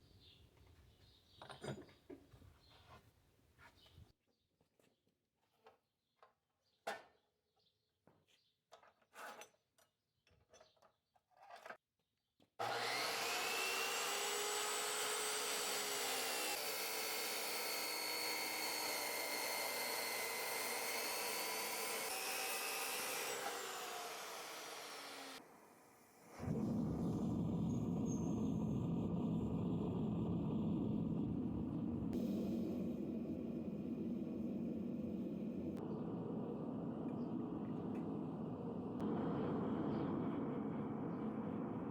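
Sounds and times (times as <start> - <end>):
electric power tool whining: 12.6 - 35.8.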